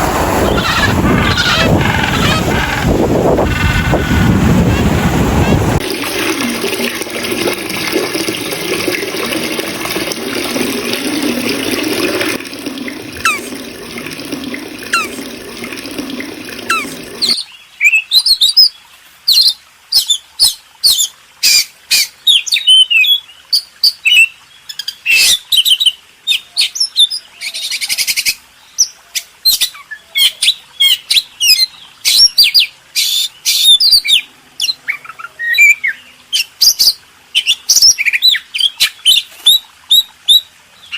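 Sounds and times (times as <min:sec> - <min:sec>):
steady rushing noise: 0:00.0 - 0:17.3.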